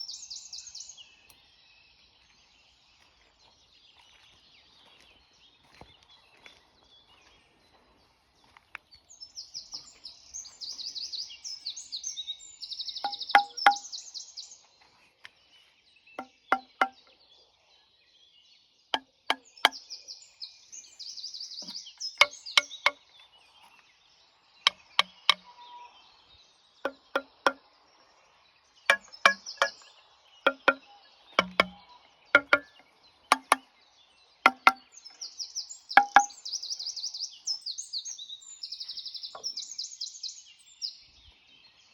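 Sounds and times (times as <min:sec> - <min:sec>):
small birds chirping: 0:00.0 - 0:41.9
sharp ringing knocks: 0:13.0 - 0:13.9, 0:16.2 - 0:17.0, 0:21.6 - 0:23.0, 0:24.7 - 0:25.4, 0:26.9 - 0:27.6, 0:28.9 - 0:29.9, 0:30.5 - 0:31.8, 0:32.4 - 0:33.6, 0:34.5 - 0:34.9, 0:36.0 - 0:36.4.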